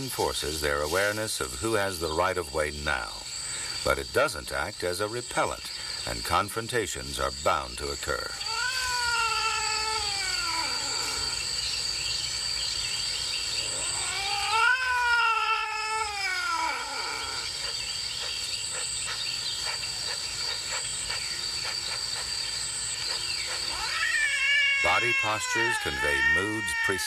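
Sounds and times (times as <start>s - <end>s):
crickets chirping: 0.0s - 27.0s
cats yowling: 8.4s - 11.4s, 13.6s - 17.7s, 23.5s - 27.0s.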